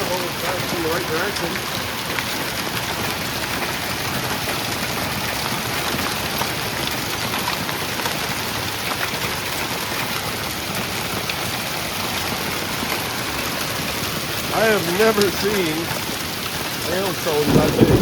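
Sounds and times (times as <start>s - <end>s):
heavy rain pouring: 0.0s - 18.0s
sharp ticks of rain impacts: 0.0s - 18.0s.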